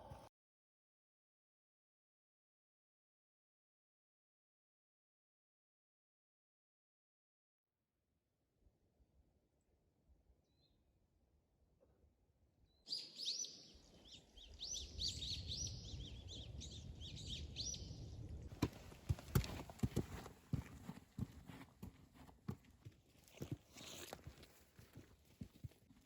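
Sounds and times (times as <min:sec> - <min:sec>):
small birds chirping: 0:12.7 - 0:18.4.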